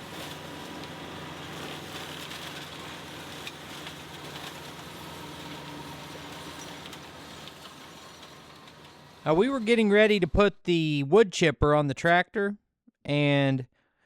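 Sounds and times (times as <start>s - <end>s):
tractor diesel engine running: 0.0s - 10.3s.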